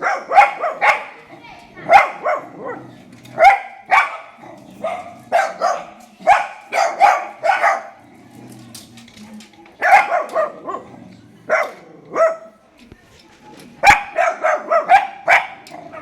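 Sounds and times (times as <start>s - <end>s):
dog barking: 0.0s - 1.2s, 1.8s - 8.0s, 9.8s - 10.9s, 11.5s - 12.6s, 13.8s - 16.0s.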